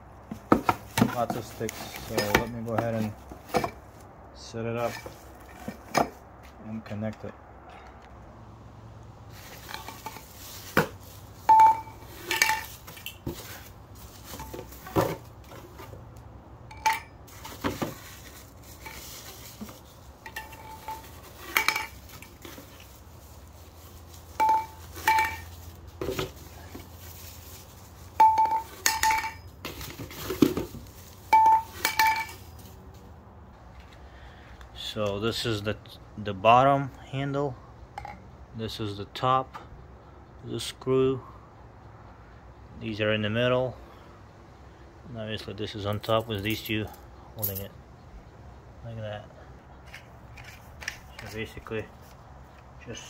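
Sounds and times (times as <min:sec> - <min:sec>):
metal poles clinking: 0:00.4 - 0:04.0, 0:09.3 - 0:16.0, 0:16.7 - 0:32.8, 0:49.8 - 0:51.8.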